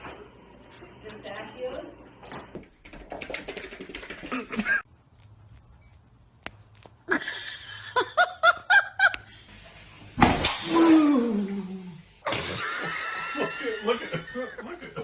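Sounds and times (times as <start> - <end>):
person laughing: 4.3 - 4.9, 7.1 - 9.5, 12.3 - 15.0.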